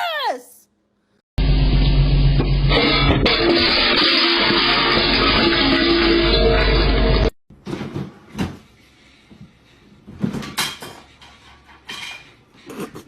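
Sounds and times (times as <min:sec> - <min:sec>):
loud electric guitar music: 0:01.4 - 0:07.3
knocks and clatters: 0:10.1 - 0:13.0.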